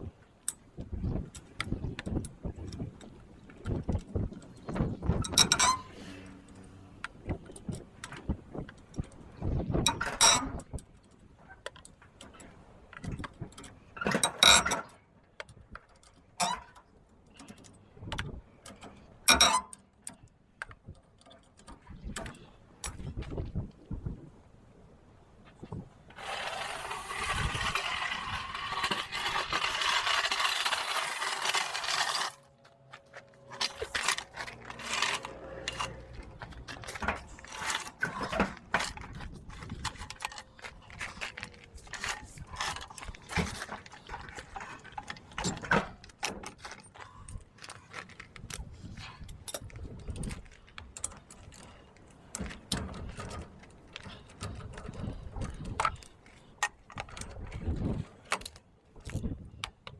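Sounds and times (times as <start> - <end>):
metallic clicks of hand tools: 9.9 - 23.0.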